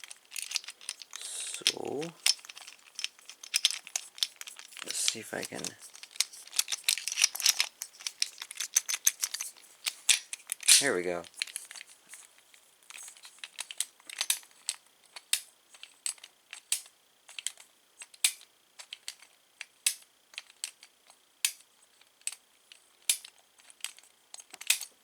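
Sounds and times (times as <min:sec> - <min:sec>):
metal door knob parts clicking: 0:00.0 - 0:10.8.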